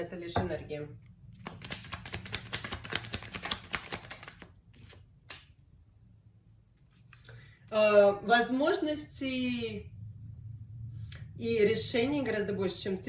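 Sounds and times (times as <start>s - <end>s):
cards being shuffled: 1.4s - 5.7s.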